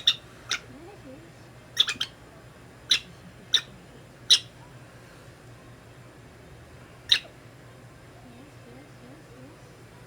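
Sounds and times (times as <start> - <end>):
prairie dog squeaking: 0.0 - 0.7, 1.8 - 2.2, 2.9 - 3.7, 4.3 - 4.5, 7.1 - 7.3.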